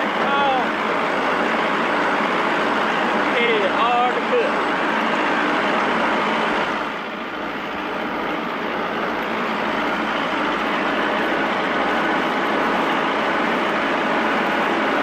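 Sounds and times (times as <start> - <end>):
tractor engine running: 0.0 - 15.0.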